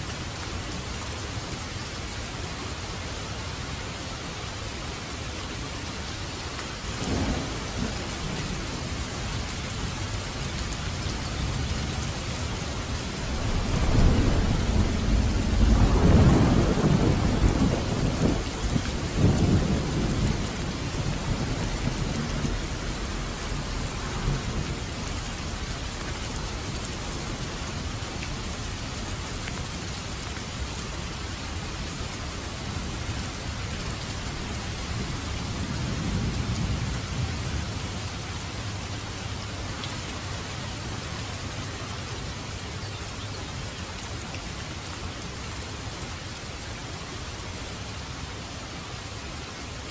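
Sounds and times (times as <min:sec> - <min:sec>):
steady rain: 0:00.0 - 0:49.9
deep rumble of thunder: 0:06.9 - 0:29.9, 0:31.8 - 0:38.9.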